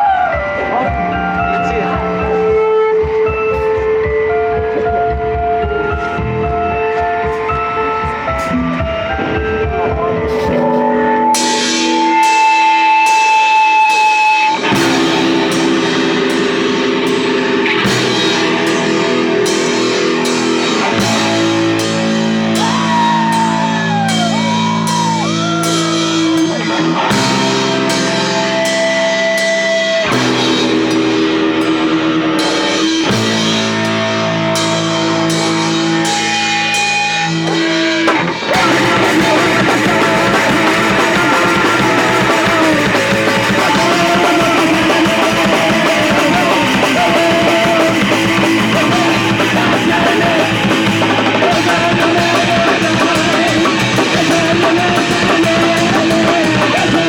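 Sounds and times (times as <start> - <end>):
guitar pitch bends: 0.0 - 57.0
rock music: 0.0 - 57.0.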